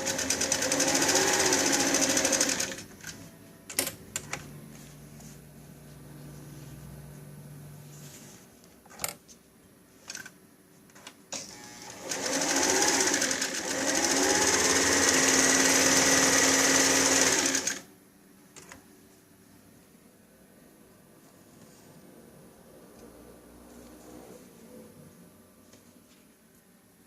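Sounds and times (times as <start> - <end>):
sewing machine running: 0.0 - 2.9, 11.5 - 17.8.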